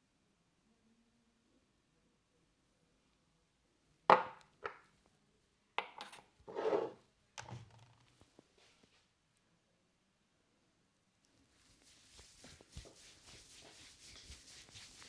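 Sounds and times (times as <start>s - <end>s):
short rustle: 11.6s - 15.0s.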